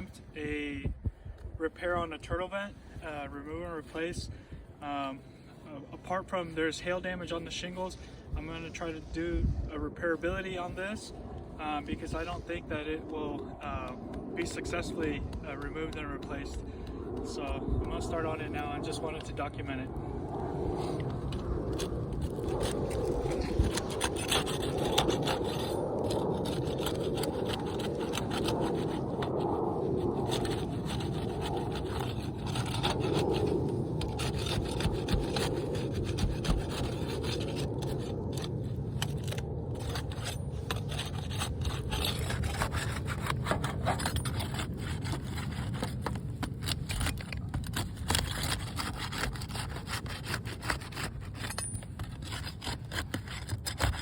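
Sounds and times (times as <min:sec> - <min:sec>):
scraping on roof shingles: 0:21.7 - 0:54.0.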